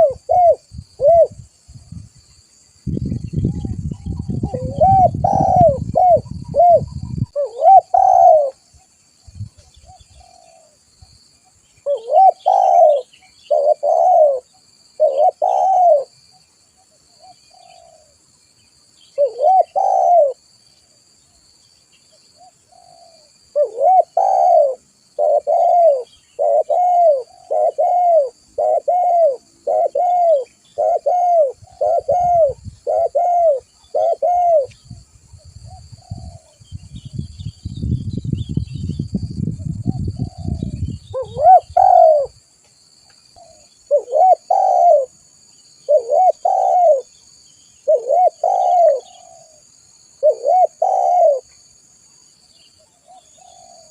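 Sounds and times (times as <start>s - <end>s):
dove cooing: 0.0s - 1.4s, 3.4s - 8.7s, 9.8s - 10.8s, 11.8s - 16.1s, 17.5s - 18.2s, 19.2s - 20.4s, 22.4s - 34.8s, 35.7s - 36.6s, 39.8s - 42.4s, 43.4s - 45.2s, 45.8s - 47.1s, 47.8s - 49.6s, 50.2s - 51.5s, 53.0s - 53.9s.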